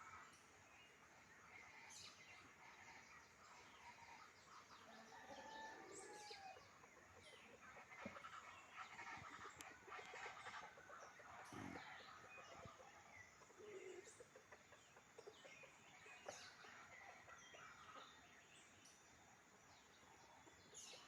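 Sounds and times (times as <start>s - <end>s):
wild birds chirping: 0.0s - 21.0s
fowl clucking: 2.6s - 15.5s.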